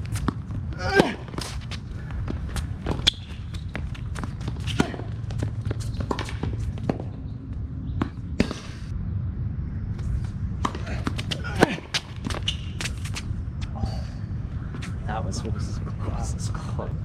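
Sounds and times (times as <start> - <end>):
players' footsteps: 0.0 - 8.6
steady low rumble: 0.0 - 17.0
tennis ball bouncing and struck: 2.8 - 7.2.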